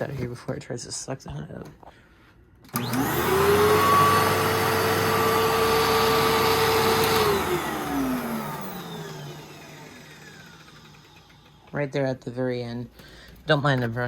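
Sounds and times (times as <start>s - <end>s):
vacuum cleaner motor whine: 2.7s - 11.9s.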